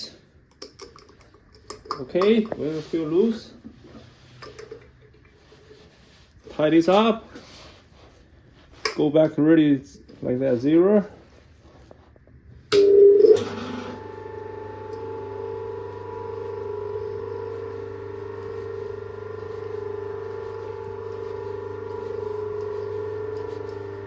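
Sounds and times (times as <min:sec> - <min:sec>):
coffee grinder motor humming: 0:13.4 - 0:24.0.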